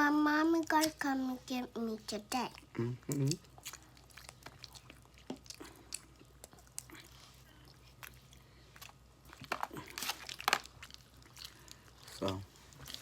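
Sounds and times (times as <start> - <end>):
person chewing crunchy food: 2.5 - 13.0.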